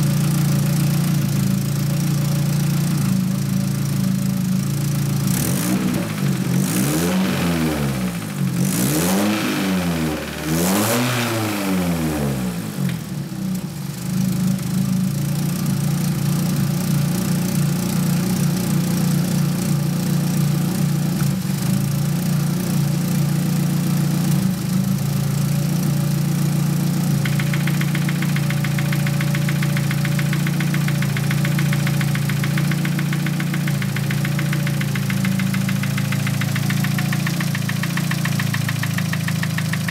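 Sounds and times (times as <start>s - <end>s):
car engine revving and idling: 0.0s - 39.9s
engine ticking knock: 27.0s - 39.9s.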